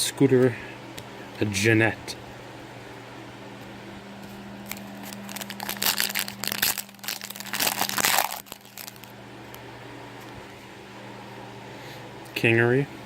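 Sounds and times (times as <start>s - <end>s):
steady low hum: 0.0s - 13.0s
foil wrapper crinkling: 4.6s - 9.2s.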